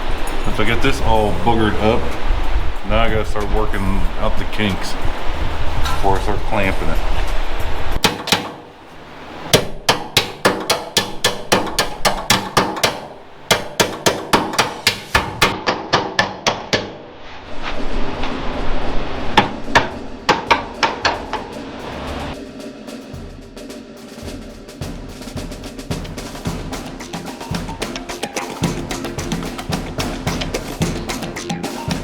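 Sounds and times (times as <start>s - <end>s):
hammer striking sheet metal: 8.0s - 17.2s, 19.3s - 32.0s.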